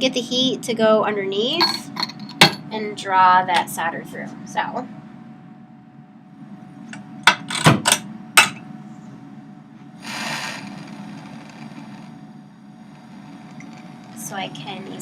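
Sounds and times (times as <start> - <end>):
gas hissing: 10.0 - 15.0.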